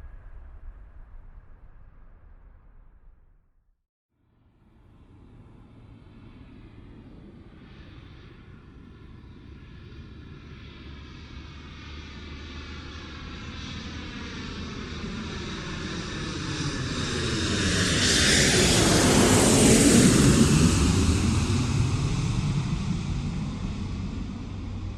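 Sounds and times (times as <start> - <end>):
airplane engine roar overhead: 4.4 - 24.9.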